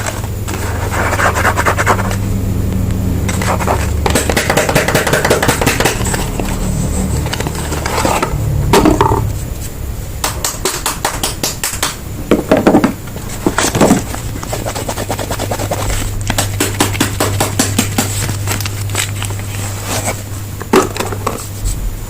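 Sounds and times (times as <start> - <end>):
packaging crinkling and rustling: 17.8 - 21.7.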